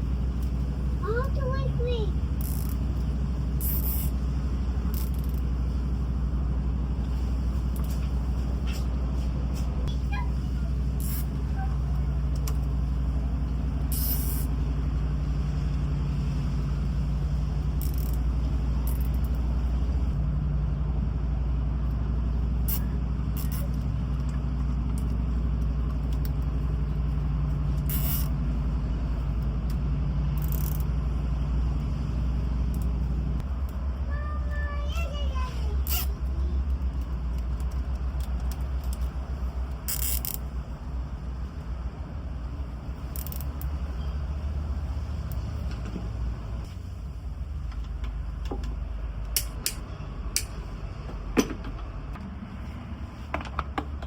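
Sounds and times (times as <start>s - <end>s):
low mechanical hum: 0.0s - 54.0s
faint short hisses: 27.9s - 28.3s.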